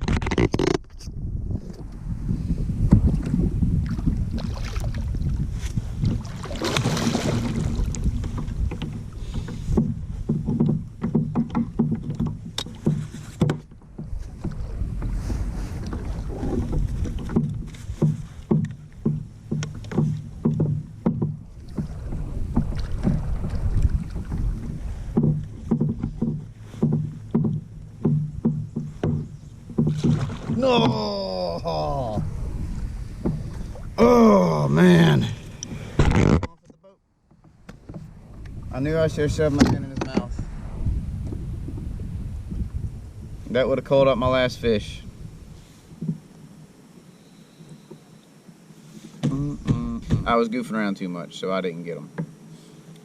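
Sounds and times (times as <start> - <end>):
wind on microphone: 0.0 - 36.5, 37.5 - 46.2
knocking and handling in kayak: 0.0 - 46.9, 47.6 - 50.4, 52.1 - 52.5
regular low thumps: 16.4 - 35.2.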